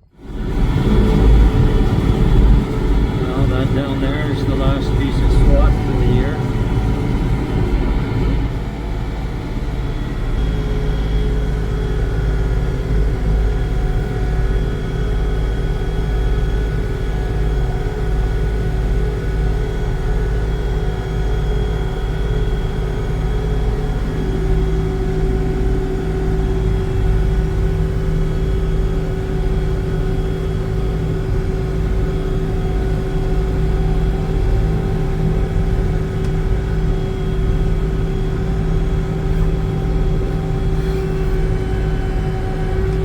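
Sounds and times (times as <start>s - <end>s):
harvesting machine engine rumble: 0.0s - 11.0s.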